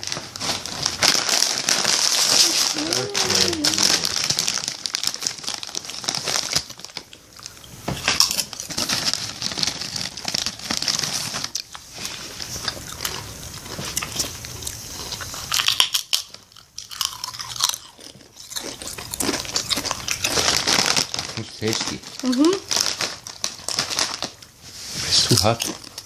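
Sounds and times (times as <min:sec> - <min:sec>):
chips being crunched: 0:00.0 - 0:11.8, 0:12.5 - 0:24.5.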